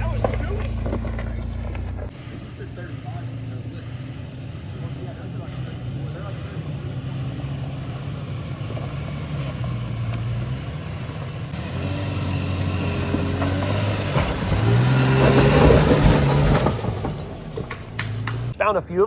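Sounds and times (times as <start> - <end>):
off-road vehicle engine revving: 0.0 - 18.8.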